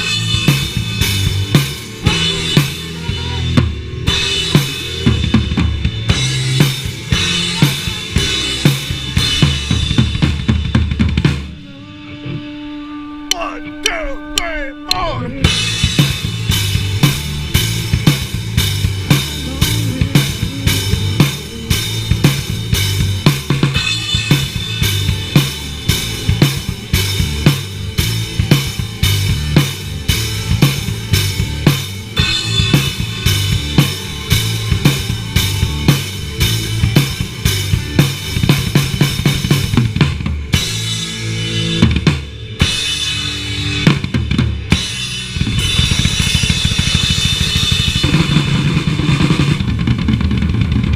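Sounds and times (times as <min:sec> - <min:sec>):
drum kit beat: 0:00.0 - 0:11.5, 0:13.3 - 0:50.9
live rock band playing: 0:00.0 - 0:50.9.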